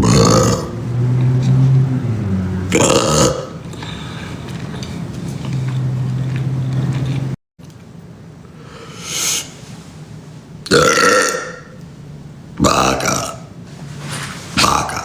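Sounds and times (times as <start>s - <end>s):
man burping: 0.0s - 0.8s, 2.7s - 3.6s, 10.7s - 11.8s, 12.6s - 13.5s.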